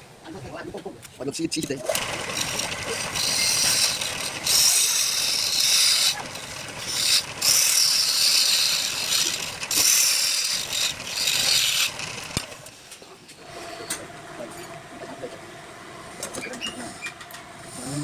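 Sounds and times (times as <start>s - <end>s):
lathe tool scraping wood: 1.8s - 12.8s.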